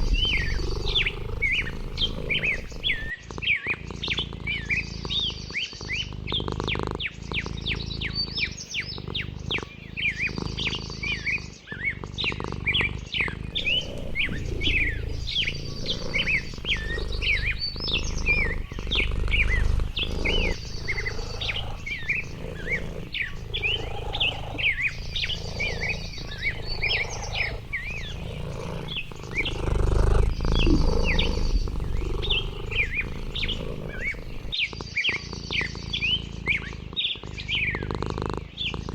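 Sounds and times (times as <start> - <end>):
low rumble: 0.0 - 3.1
songbirds chirping: 0.0 - 38.9.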